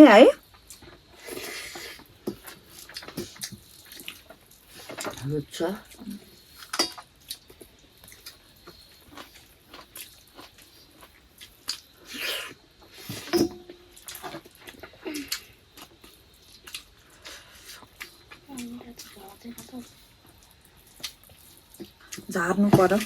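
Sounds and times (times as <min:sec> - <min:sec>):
mouth smacking and chewing: 0:05.9 - 0:13.3, 0:14.0 - 0:22.3.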